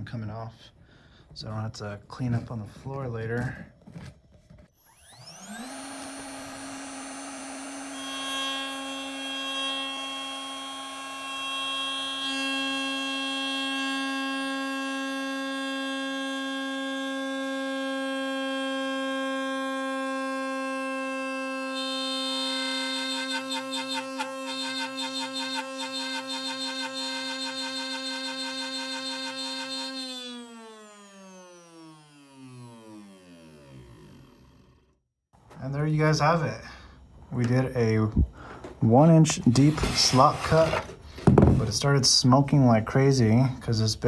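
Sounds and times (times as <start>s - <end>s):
router spindle high whine: 4.8s - 34.6s
router bit cutting wood: 4.8s - 34.9s, 39.3s - 41.6s.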